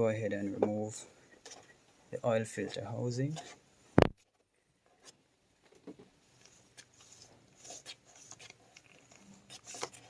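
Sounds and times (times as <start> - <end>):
faint clicks and scrapes: 1.3 - 2.0, 2.6 - 3.6, 4.2 - 10.0.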